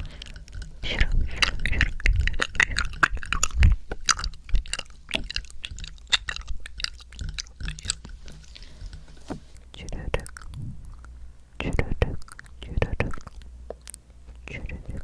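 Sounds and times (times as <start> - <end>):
tongue clicks: 9.8 - 15.0.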